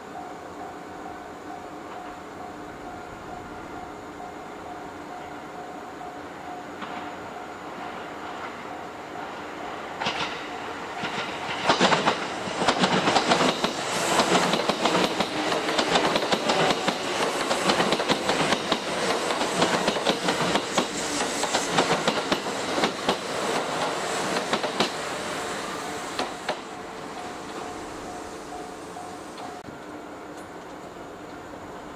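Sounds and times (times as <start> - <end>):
train wheels clattering over rails: 6.8 - 29.6.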